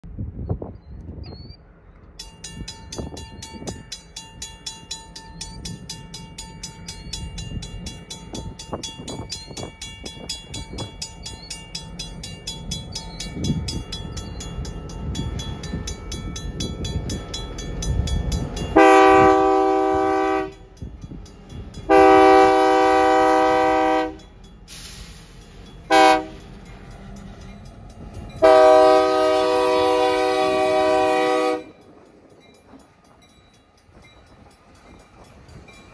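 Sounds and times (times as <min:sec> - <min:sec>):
diesel locomotive engine rumble: 0:00.0 - 0:35.9
locomotive air horn blasts: 0:18.8 - 0:20.7, 0:21.9 - 0:24.2, 0:25.9 - 0:26.4, 0:28.4 - 0:31.8.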